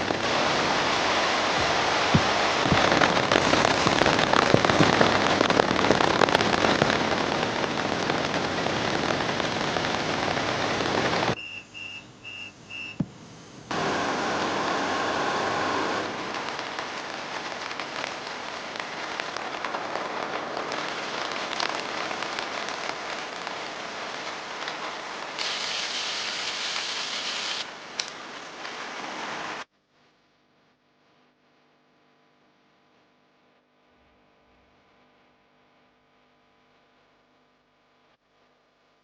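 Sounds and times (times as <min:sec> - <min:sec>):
heavy rain falling: 0:00.0 - 0:11.6, 0:13.7 - 0:29.7.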